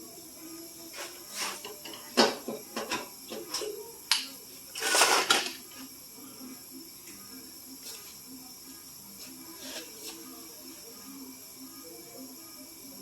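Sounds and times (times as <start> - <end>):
scraping sound: 4.8 - 5.4.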